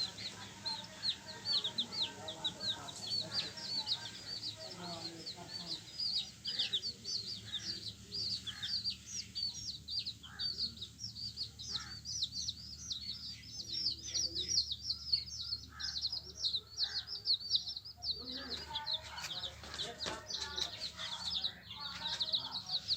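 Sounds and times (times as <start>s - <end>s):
chicks peeping: 0.0s - 22.9s.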